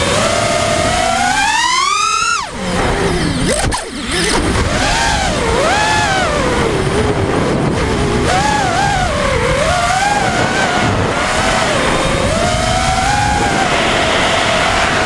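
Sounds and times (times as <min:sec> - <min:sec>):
drone motors whining: 0:00.0 - 0:15.0
rush of air: 0:10.1 - 0:15.0.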